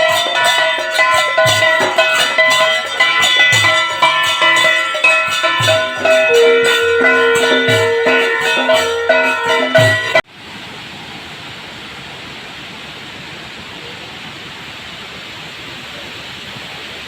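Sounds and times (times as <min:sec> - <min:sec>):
music with percussion beat: 0:00.0 - 0:10.2.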